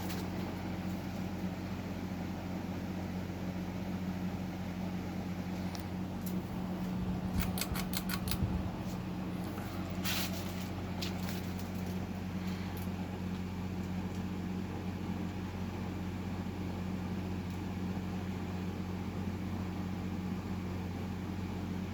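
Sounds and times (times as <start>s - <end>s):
ceiling fan motor hum: 0.0s - 21.9s
fan rattle: 0.0s - 21.9s
fan clicks: 5.6s - 14.5s, 17.4s - 17.8s.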